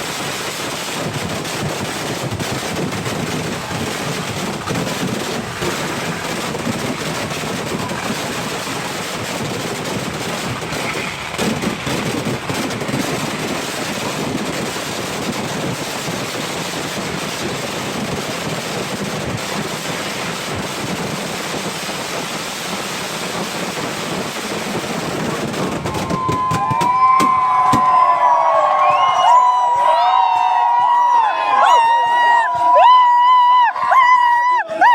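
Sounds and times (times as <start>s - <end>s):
firecracker explosions crackling: 0.0s - 34.9s
crowd cheering and whistling: 25.8s - 34.9s.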